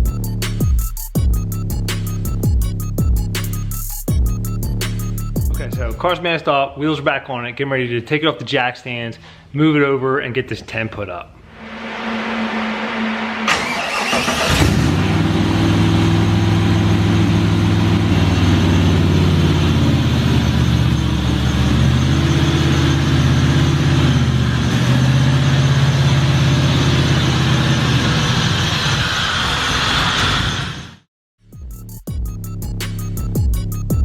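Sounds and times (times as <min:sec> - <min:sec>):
car engine starting and idling: 0:11.6 - 0:29.2.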